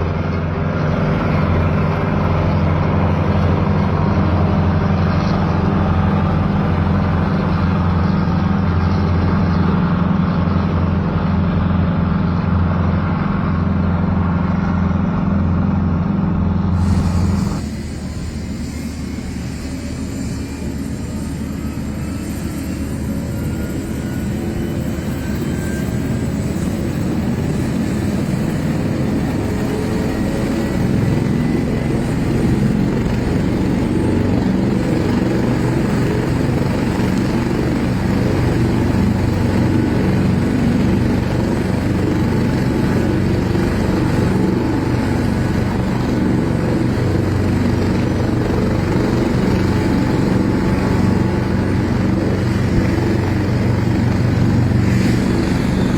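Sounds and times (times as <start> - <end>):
helicopter running: 0.0 - 55.9
faint rising whine: 13.0 - 26.6.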